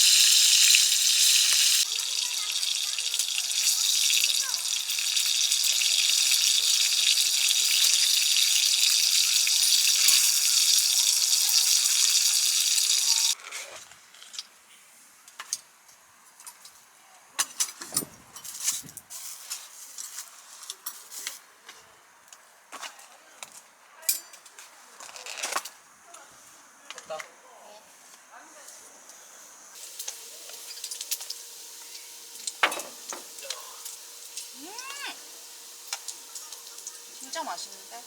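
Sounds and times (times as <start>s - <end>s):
food sizzling in a pan: 0.0s - 13.4s, 29.6s - 38.0s.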